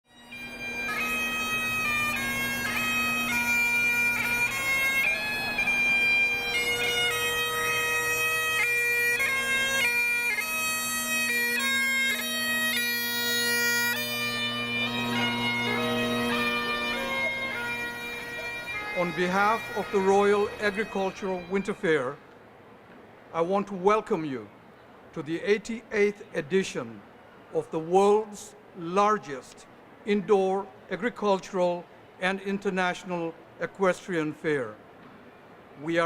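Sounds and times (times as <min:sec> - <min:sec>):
bagpipes playing: 0:00.1 - 0:22.2.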